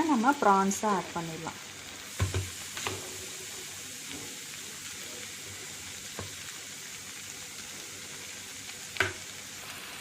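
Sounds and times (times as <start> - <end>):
prawns sizzling in oil: 0.0 - 10.0.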